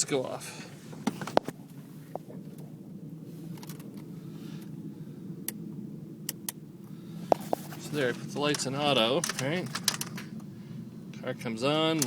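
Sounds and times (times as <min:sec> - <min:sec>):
low cabin hum: 0:00.0 - 0:12.0.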